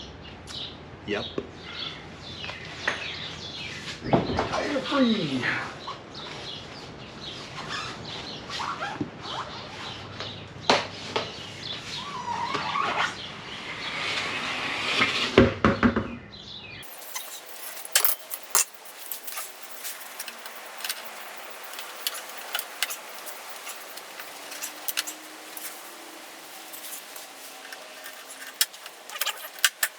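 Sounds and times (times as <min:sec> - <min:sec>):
birds chirping: 0:16.3 - 0:29.9
metallic tool clicks and clinks: 0:16.8 - 0:29.9.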